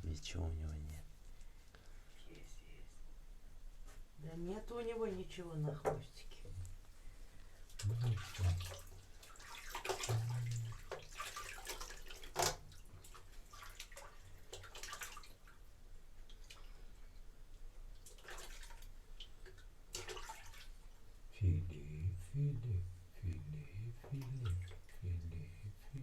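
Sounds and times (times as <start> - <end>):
bathwater splashing: 7.7 - 16.8, 17.9 - 21.0, 23.6 - 25.4.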